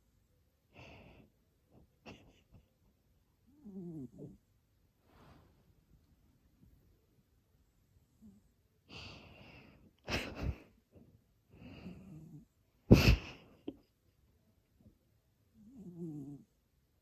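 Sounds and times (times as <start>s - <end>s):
cat snoring: 3.5s - 4.4s, 15.6s - 16.5s.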